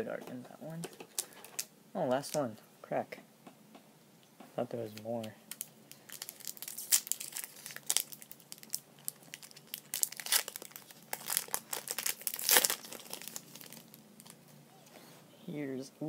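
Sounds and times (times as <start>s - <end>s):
foil wrapper crinkling and tearing: 0.9s - 2.4s, 5.0s - 14.4s.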